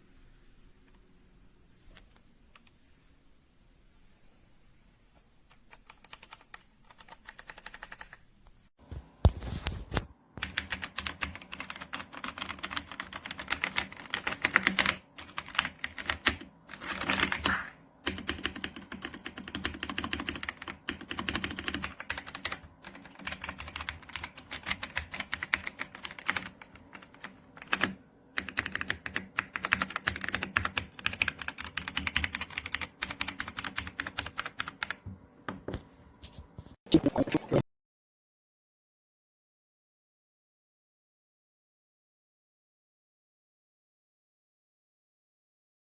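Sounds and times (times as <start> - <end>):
mechanical keyboard typing: 5.5 - 8.2, 10.4 - 35.0.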